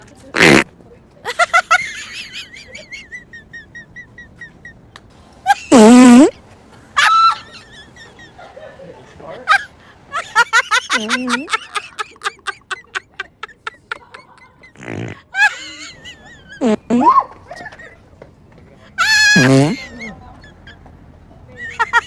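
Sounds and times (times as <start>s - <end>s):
fart noises: 0.4s - 0.7s, 5.7s - 6.3s, 14.7s - 15.2s, 16.6s - 17.1s, 19.3s - 19.9s.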